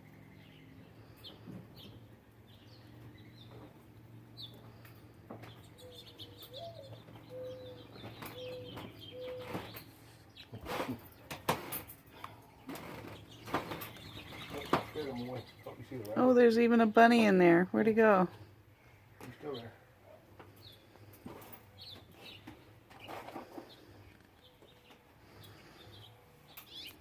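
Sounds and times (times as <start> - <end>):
small birds chirping: 0.0 - 11.5, 12.1 - 27.0
dove cooing: 5.8 - 9.8
wings flapping: 12.7 - 15.7.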